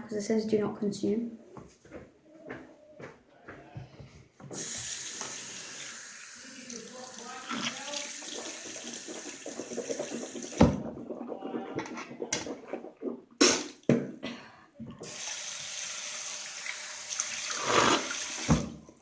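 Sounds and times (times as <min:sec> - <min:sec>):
sink tap running: 0:04.5 - 0:10.8, 0:15.0 - 0:18.8.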